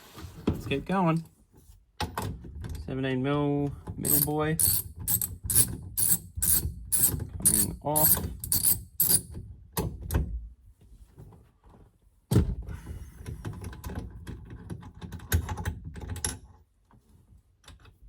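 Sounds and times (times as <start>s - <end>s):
small metallic clicks and rattles: 4.0s - 9.4s.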